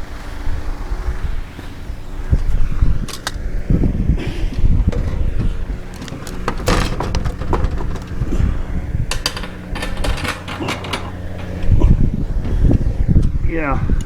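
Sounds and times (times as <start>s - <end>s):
steady low hum: 0.0s - 14.0s
hand tools clicking and scraping: 3.0s - 3.5s, 4.2s - 13.4s.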